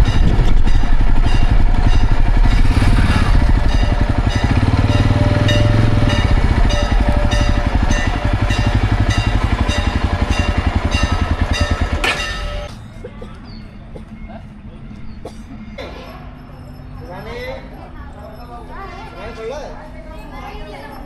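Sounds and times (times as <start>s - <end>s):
motorcycle engine running: 0.0s - 12.7s.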